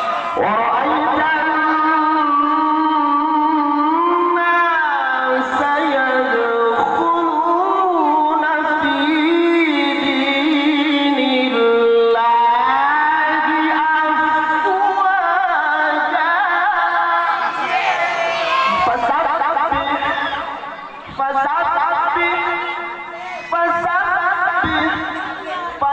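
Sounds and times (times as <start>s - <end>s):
man chanting recitation: 0.4s - 17.3s, 18.7s - 25.9s.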